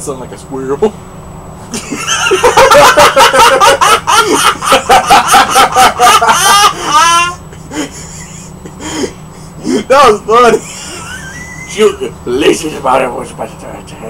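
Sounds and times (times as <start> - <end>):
person laughing hard: 1.8 - 12.0.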